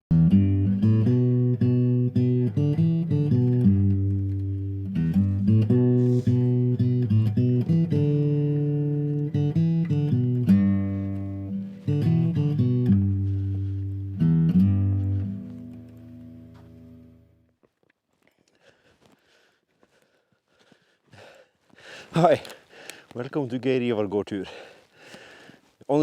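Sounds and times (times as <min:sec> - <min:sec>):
plucked guitar tune: 0:00.1 - 0:17.5.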